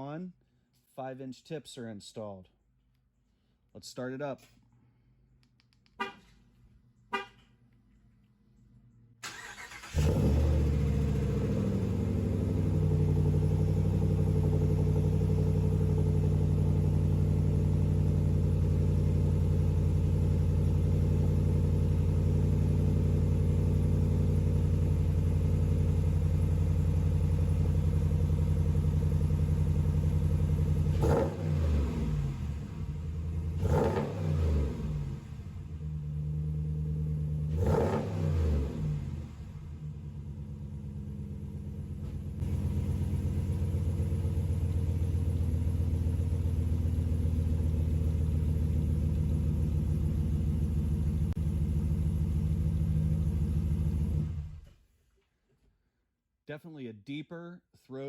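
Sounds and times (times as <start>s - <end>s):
pickup engine cranking and idling: 9.2s - 31.3s, 39.0s - 54.9s
engine revving: 9.2s - 54.7s.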